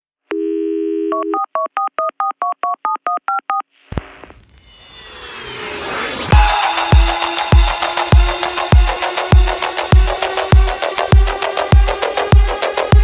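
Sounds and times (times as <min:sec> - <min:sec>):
rising whoosh: 0:04.0 - 0:11.5.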